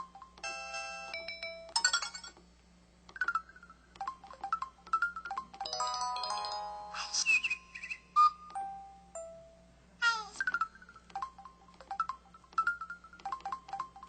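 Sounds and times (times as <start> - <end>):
phone electronic chimes and jingles: 3.2 - 7.0.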